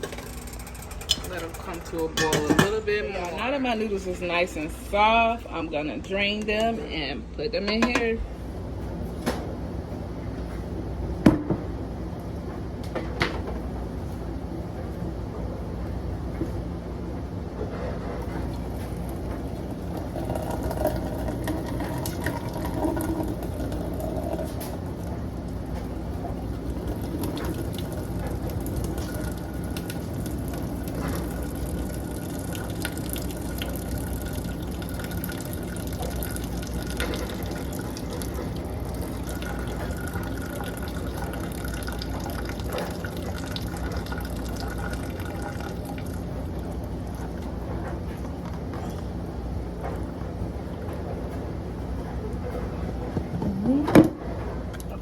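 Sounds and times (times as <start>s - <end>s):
water pouring into a sink: 19.0s - 24.6s, 26.5s - 47.4s.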